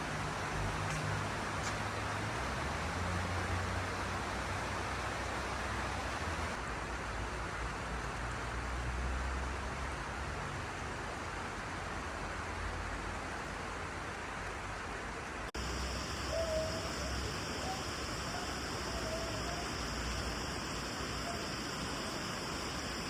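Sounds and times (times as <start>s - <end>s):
rain hissing: 0.0s - 8.2s, 11.5s - 23.0s
faint pitched calls: 15.6s - 22.9s.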